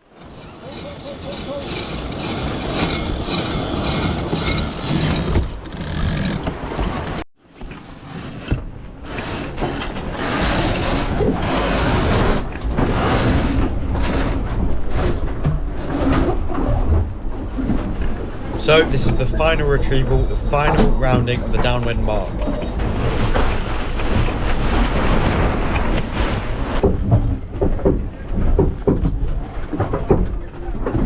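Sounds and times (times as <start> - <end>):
winch ratcheting: 0.2 - 7.2.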